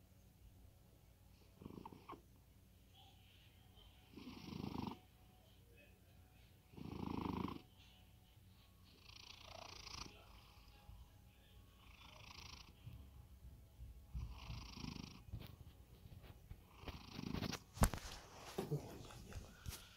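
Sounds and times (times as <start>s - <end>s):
cat snoring softly: 1.4s - 2.2s, 4.1s - 5.1s, 6.7s - 7.8s, 8.8s - 11.0s, 11.8s - 13.2s, 14.1s - 15.4s, 16.6s - 17.6s.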